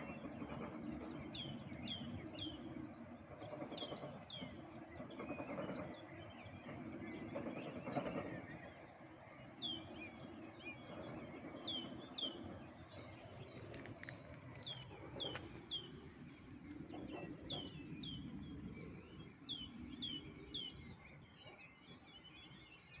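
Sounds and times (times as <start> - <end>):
songbird chirping: 0.0 - 23.0
steady low rumble: 9.3 - 22.5.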